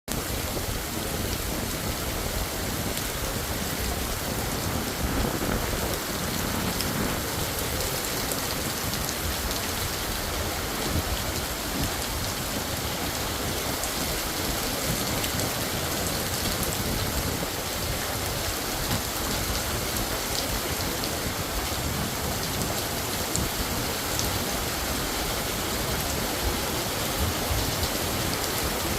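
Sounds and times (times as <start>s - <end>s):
rain pouring down: 0.1s - 28.9s.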